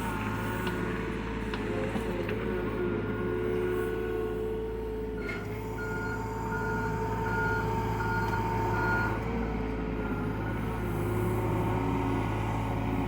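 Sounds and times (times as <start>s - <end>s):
excavator travel alarm beeping: 5.8s - 9.2s.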